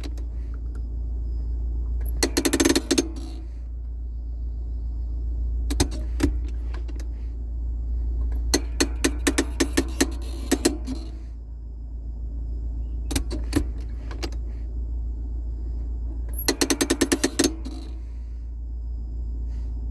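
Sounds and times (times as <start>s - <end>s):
low hum: 0.0s - 19.9s
handbrake ratchet clicking: 2.0s - 3.5s, 5.7s - 7.1s, 8.3s - 11.2s, 13.1s - 14.4s, 16.3s - 18.0s.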